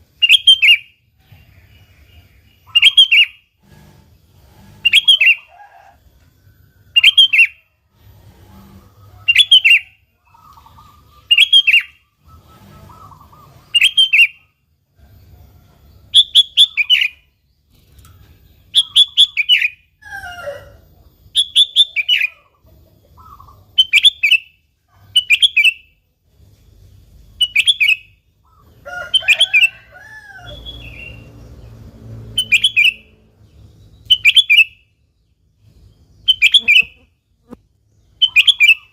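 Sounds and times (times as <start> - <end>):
bird chirping phrases: 0.0 - 3.8, 8.9 - 14.5, 16.0 - 20.0, 30.4 - 38.9
lower gliding bird calls: 2.6 - 3.9, 4.6 - 6.0, 8.4 - 14.6, 36.2 - 38.9.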